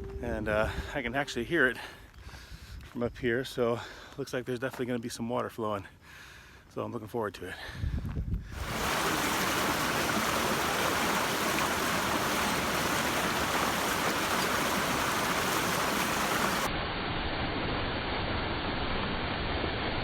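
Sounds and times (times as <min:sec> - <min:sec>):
small waterfall rushing: 0:08.6 - 0:16.7.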